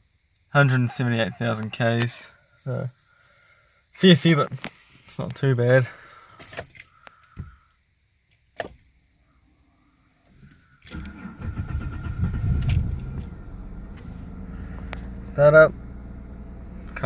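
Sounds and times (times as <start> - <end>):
car engine starting and idling: 10.4 - 17.0.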